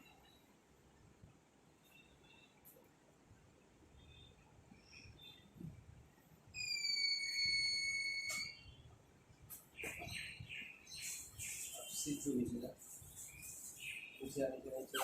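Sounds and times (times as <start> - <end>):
faint chirps: 1.8 - 2.8
high whistle-like tone: 6.6 - 8.7.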